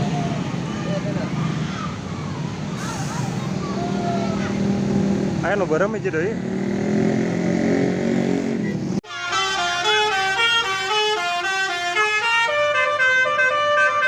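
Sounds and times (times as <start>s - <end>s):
vehicle engine noise: 0.0s - 13.1s
musical bus horn melody: 9.0s - 14.0s.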